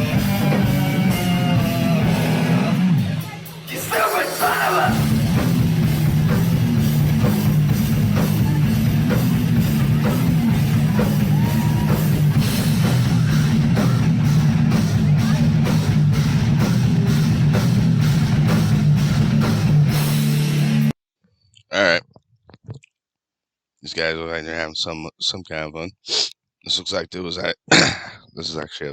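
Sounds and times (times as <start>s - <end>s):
distorted electric guitars: 0.0s - 20.9s
fast dense drumming: 0.0s - 20.9s.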